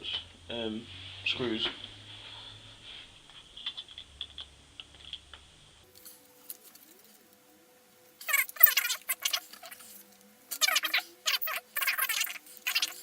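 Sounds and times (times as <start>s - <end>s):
sharp clicks and scrapes: 8.2s - 13.0s.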